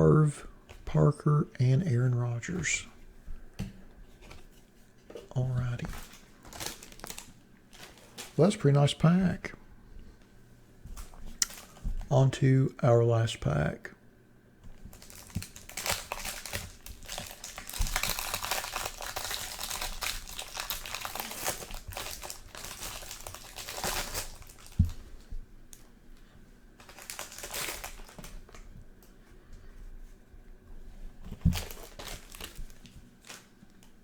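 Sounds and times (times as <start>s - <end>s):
plastic wrapper tearing and crinkling: 5.6s - 8.4s, 14.9s - 25.0s, 26.8s - 28.6s, 31.4s - 33.5s.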